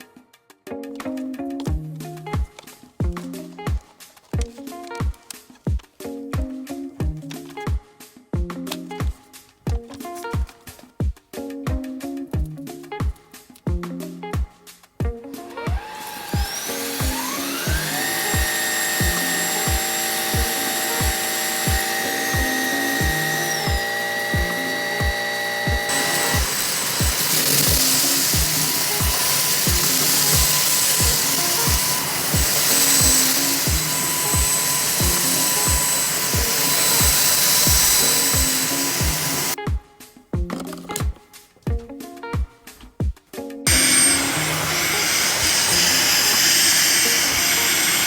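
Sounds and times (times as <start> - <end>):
background music with steady beat: 0.0 - 48.0
stick vacuum motor whine: 15.6 - 39.6, 43.7 - 48.0.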